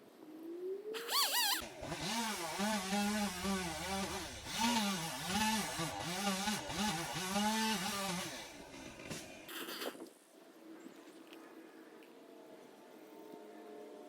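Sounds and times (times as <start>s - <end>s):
chainsaw running at high revs: 1.5s - 9.5s.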